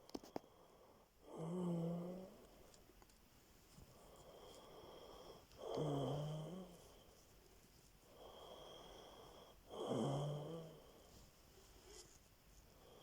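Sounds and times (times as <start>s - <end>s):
quiet breath: 0.0s - 13.0s
loud rasping snores: 9.8s - 10.8s.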